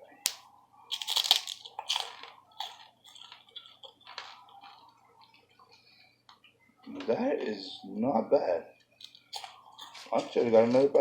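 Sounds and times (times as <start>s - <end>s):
pork rinds crunching when chewed: 0.3s - 5.8s, 8.9s - 10.8s.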